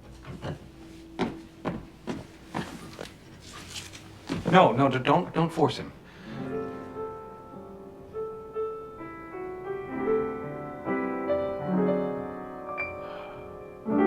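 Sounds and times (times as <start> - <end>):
film score music with soft piano: 5.9 - 14.0.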